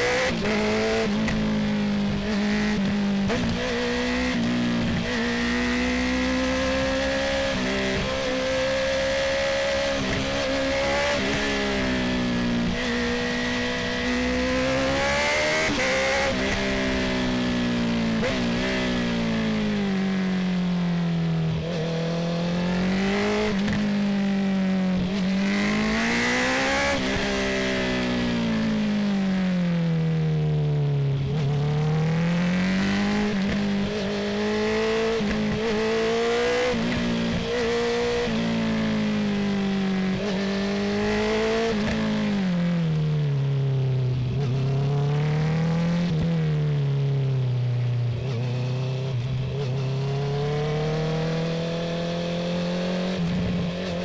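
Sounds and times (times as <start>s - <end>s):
motorcycle engine revving: 47.8s - 54.0s.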